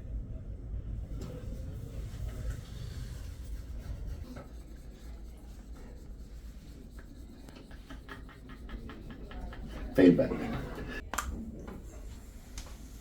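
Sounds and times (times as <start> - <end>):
low rumble: 0.0 - 6.0.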